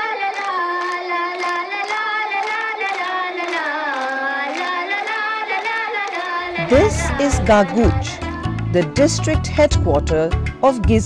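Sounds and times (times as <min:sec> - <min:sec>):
high voice singing a folk song: 0:00.0 - 0:11.0
steady light beat: 0:06.5 - 0:09.2.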